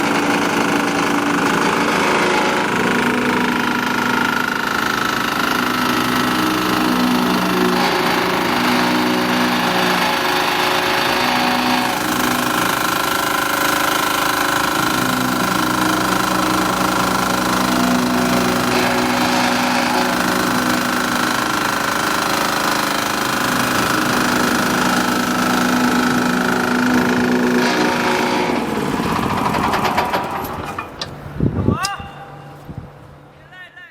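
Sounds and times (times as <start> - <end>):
vibratory roller rattling drone: 0.0 - 31.4.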